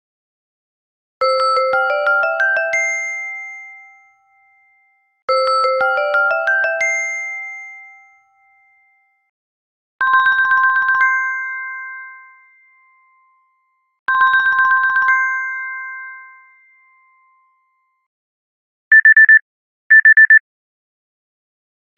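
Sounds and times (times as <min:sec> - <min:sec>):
electronic chime ringtone: 0:01.2 - 0:09.2, 0:18.9 - 0:20.4.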